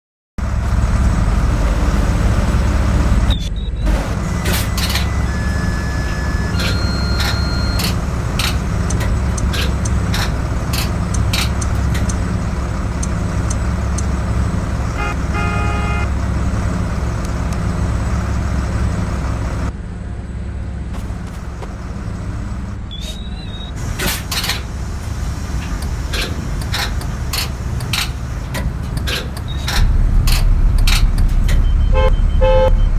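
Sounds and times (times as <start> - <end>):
bus engine rumbling: 0.4 - 32.9
short horn toot: 0.6 - 7.9, 15.0 - 16.2, 31.6 - 32.9
clicks and knocks: 21.0 - 23.4.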